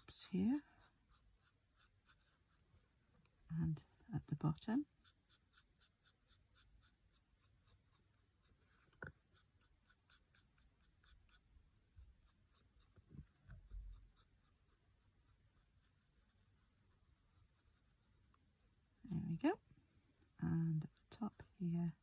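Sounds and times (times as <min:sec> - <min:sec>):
marker scratching and tapping on card: 0:00.0 - 0:03.4, 0:04.9 - 0:18.8.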